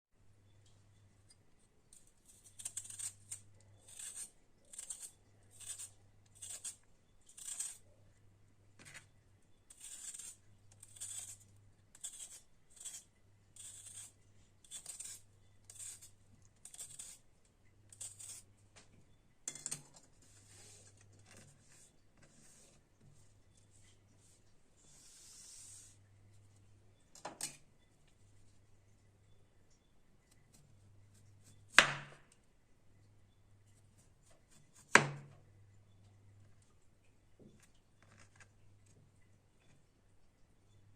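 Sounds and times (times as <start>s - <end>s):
blade scraping potato: 2.0s - 7.9s, 9.7s - 17.3s, 17.9s - 18.5s.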